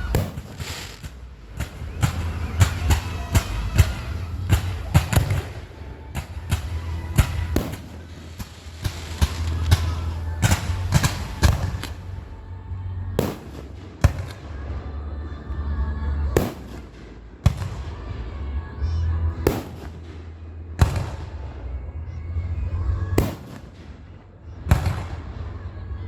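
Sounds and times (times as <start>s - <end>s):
loud sharp echoing bangs: 0.0s - 12.2s, 13.2s - 14.6s
low steady rumble: 0.0s - 26.0s.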